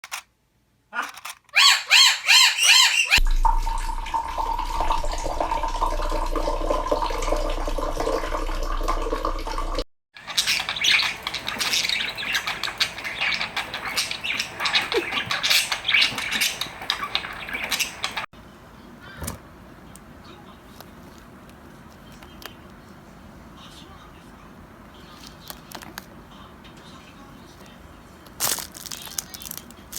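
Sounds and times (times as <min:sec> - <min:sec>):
pet birds calling and squawking: 0:01.0 - 0:03.2, 0:10.2 - 0:18.3.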